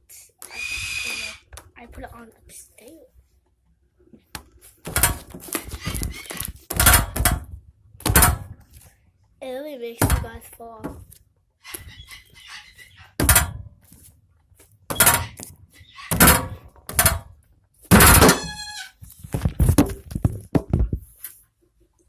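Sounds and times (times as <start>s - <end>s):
falling squeak: 0.5s - 1.5s, 5.6s - 6.5s, 11.6s - 13.2s, 14.9s - 16.5s, 18.2s - 19.0s.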